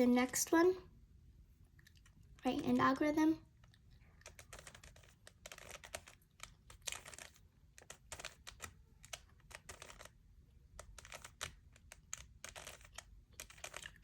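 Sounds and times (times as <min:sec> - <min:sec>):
puzzle cube plastic clicking: 0:03.6 - 0:14.0.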